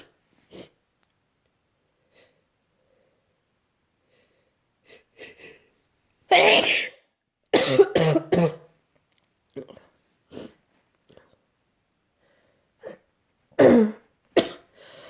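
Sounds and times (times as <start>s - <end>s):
woman sneezing: 6.3s - 7.0s
woman coughing: 7.6s - 8.7s, 13.6s - 14.7s.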